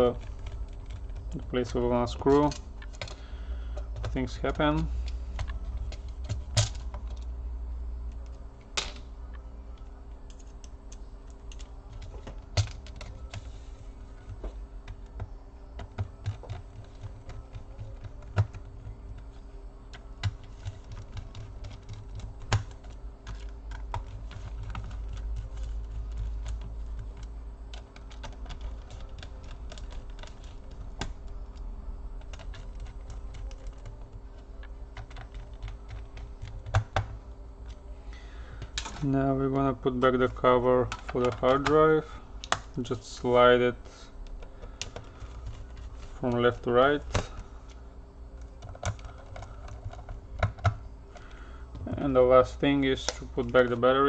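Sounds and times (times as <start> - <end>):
low steady hum: 0.0 - 54.0
plastic laptop casing handled: 44.3 - 47.5, 48.4 - 51.9.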